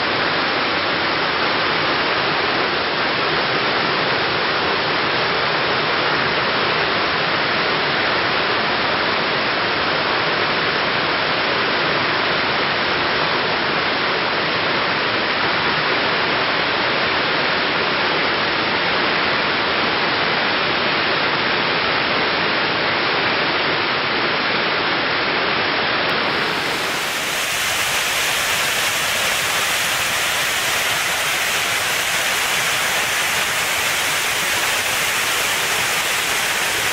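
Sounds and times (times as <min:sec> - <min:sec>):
waterfall rushing: 0:26.1 - 0:36.9.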